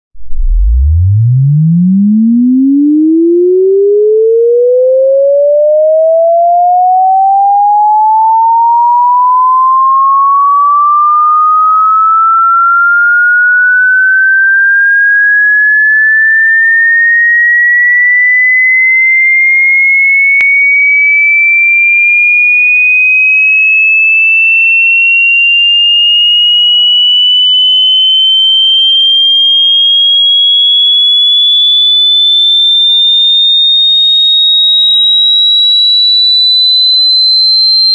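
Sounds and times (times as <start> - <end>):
rising electronic alarm tone: 0.2 - 37.9.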